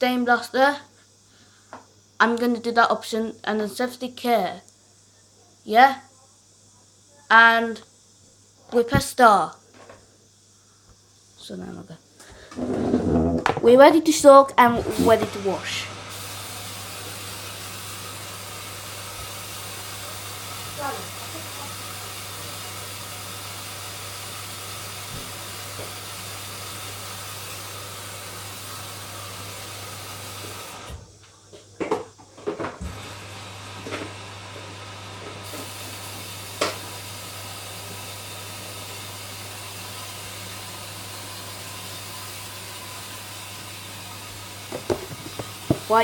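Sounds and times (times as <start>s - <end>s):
water flowing into washing machine: 12.5s - 13.7s, 14.6s - 31.0s, 32.6s - 46.0s
knocks: 44.7s - 45.9s.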